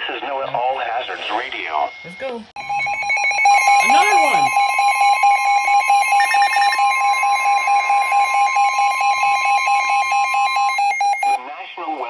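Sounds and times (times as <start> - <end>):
long steady alarm tone: 2.1 - 11.4
rapid electronic beeping: 2.6 - 11.4.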